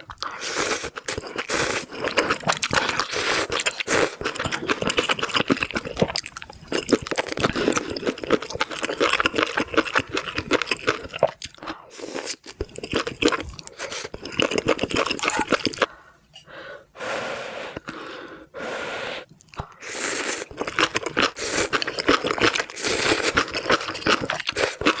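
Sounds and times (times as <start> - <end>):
person chewing food: 0.0 - 16.0, 19.3 - 25.0.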